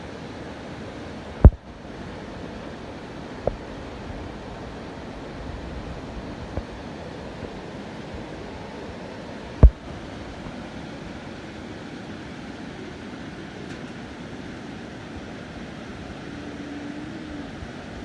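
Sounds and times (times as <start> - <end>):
sharp low thumps: 9.6 - 9.8.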